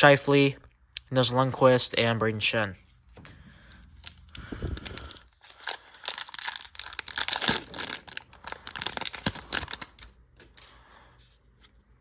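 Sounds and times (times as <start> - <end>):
cards clicking and rustling: 3.1 - 11.7
wrapper tearing and crinkling: 4.0 - 10.2.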